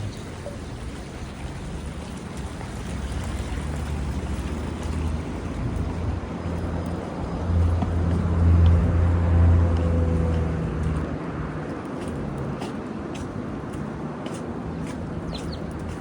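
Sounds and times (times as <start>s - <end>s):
vehicle engine passing by: 1.6s - 11.6s.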